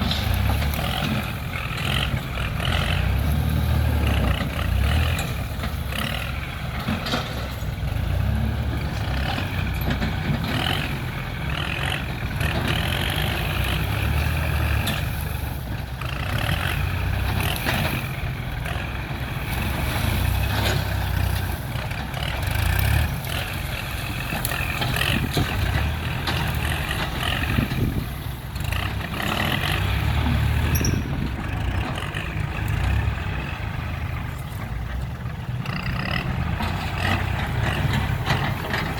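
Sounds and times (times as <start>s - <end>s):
diesel earthmoving machinery engine: 0.0s - 38.9s.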